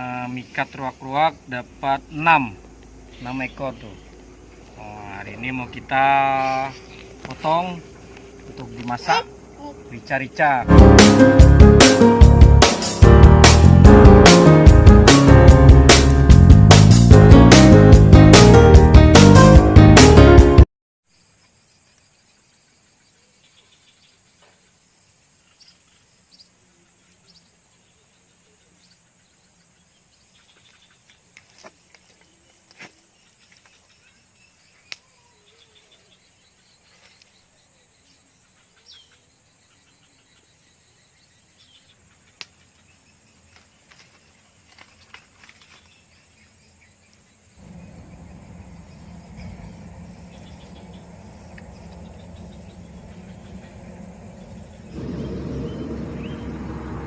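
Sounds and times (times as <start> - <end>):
insects droning: 0.0 - 15.4, 21.1 - 57.0
low rumbling noise: 47.6 - 57.0.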